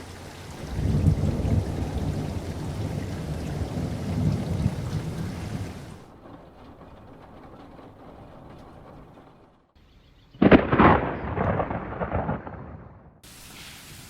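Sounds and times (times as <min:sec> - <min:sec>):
heavy rain hissing: 0:00.0 - 0:06.1, 0:13.2 - 0:14.0
thunder rumbling: 0:00.0 - 0:13.3.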